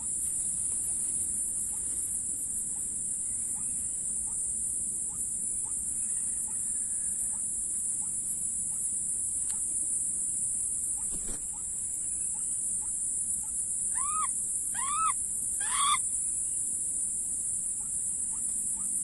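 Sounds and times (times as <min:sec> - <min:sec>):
steady high-pitched hiss: 0:00.0 - 0:19.0
bird calling: 0:13.9 - 0:16.0.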